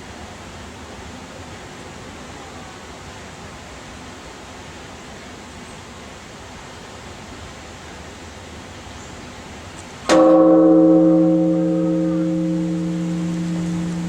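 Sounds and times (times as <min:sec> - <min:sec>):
large temple bell ringing: 0:10.1 - 0:14.0.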